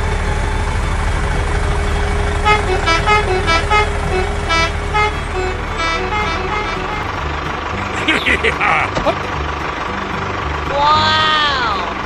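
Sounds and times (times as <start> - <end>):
horn toots at changing pitches: 0.0 - 9.2
vehicle engine running: 0.0 - 12.0.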